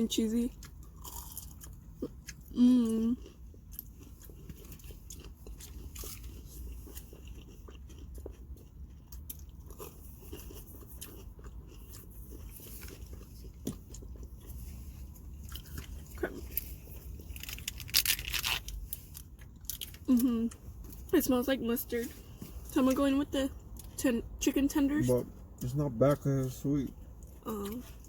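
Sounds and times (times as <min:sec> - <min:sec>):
low steady hum: 0:00.0 - 0:28.0
biting and chewing crunchy food: 0:00.5 - 0:21.2.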